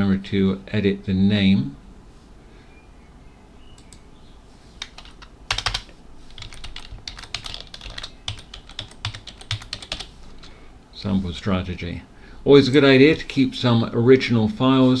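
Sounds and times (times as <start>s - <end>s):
typing on keyboard: 4.8s - 10.5s.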